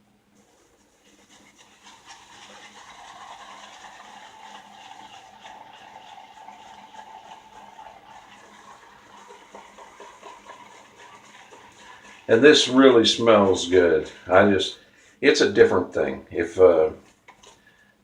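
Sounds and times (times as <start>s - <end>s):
shaving brush wet swishing: 0.4s - 4.6s, 8.9s - 13.8s.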